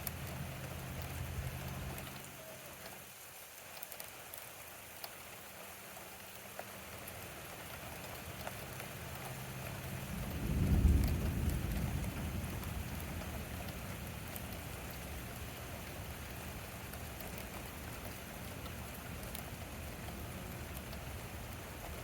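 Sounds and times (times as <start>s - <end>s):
steady rain: 0.0s - 22.0s
thunder rumbling: 9.8s - 15.6s.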